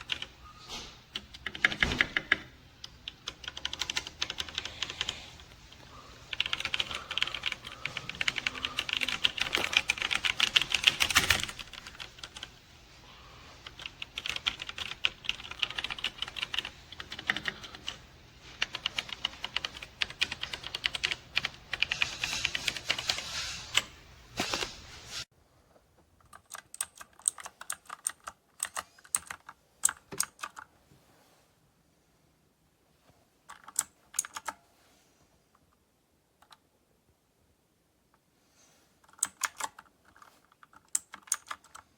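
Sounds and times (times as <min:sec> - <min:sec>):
mechanical keyboard typing: 0:00.0 - 0:00.4, 0:01.1 - 0:05.6, 0:06.3 - 0:12.6, 0:13.6 - 0:23.9, 0:26.2 - 0:30.7, 0:33.5 - 0:34.6, 0:39.1 - 0:41.9.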